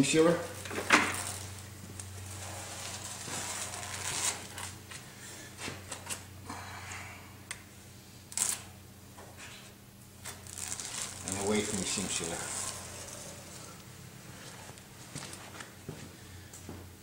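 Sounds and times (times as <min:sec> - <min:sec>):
low steady hum: 0:00.0 - 0:17.0
masking tape peeling off: 0:00.6 - 0:04.8, 0:08.3 - 0:08.7, 0:10.2 - 0:13.9.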